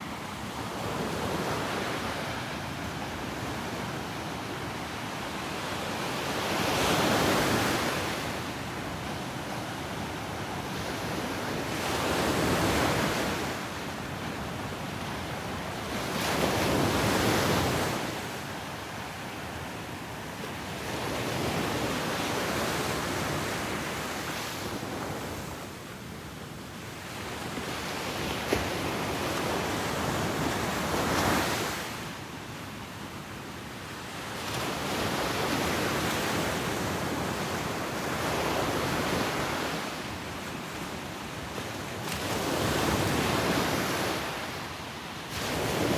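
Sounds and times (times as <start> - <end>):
ocean waves crashing on beach: 34.2 - 45.9.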